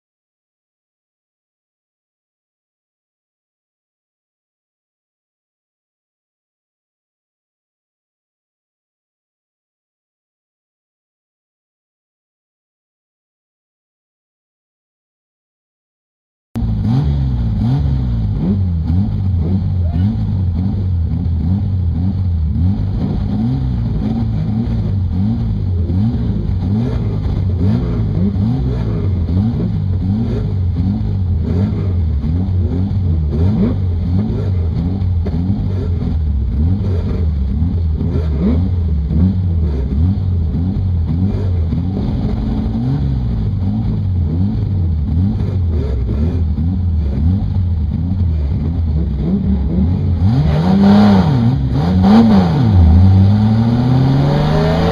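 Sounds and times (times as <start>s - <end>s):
racing car engine revving: 16.6s - 54.9s.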